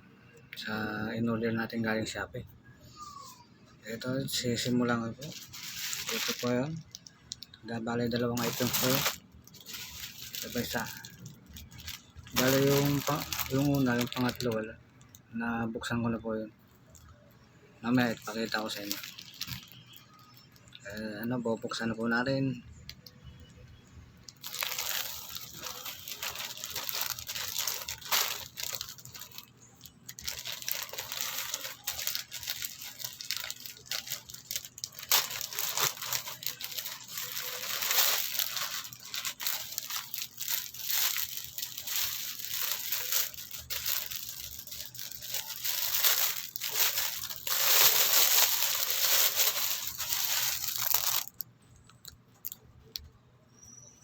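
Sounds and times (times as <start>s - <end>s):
packaging tearing and crinkling: 5.2s - 7.4s, 8.1s - 14.6s, 17.9s - 20.9s, 24.4s - 51.4s.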